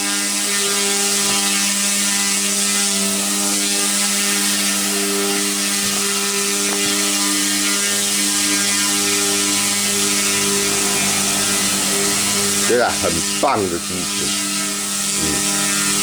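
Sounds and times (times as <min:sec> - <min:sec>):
rc helicopter whine: 0:00.0 - 0:16.0
steady hum: 0:05.9 - 0:16.0.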